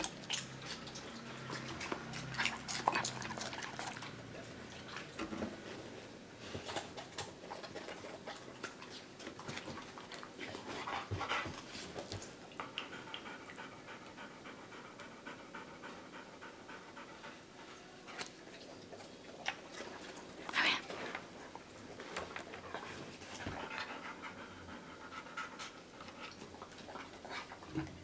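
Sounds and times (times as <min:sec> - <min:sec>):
dog panting: 0:06.5 - 0:12.0, 0:12.6 - 0:18.0, 0:18.9 - 0:27.9.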